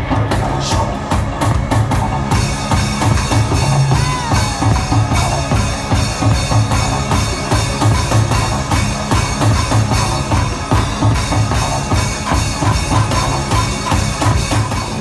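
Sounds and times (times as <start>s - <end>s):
drum kit playing a beat: 0.0s - 15.0s.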